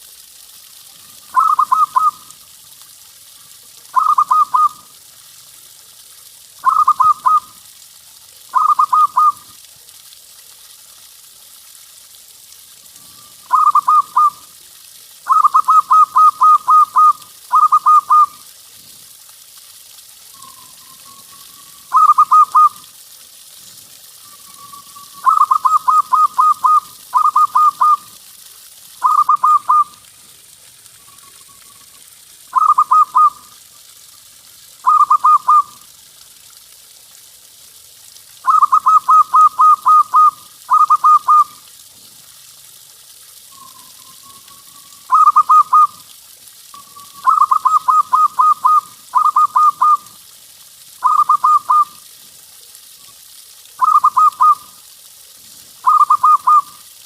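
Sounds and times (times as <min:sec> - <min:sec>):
dove cooing: 0:01.3 - 0:02.2, 0:04.0 - 0:04.8, 0:06.6 - 0:07.4, 0:08.5 - 0:09.4, 0:13.5 - 0:14.4, 0:15.3 - 0:18.3, 0:21.9 - 0:22.8, 0:25.2 - 0:28.1, 0:32.6 - 0:33.4, 0:34.8 - 0:35.7, 0:38.5 - 0:41.5, 0:45.1 - 0:46.0, 0:47.2 - 0:50.0, 0:55.8 - 0:56.6.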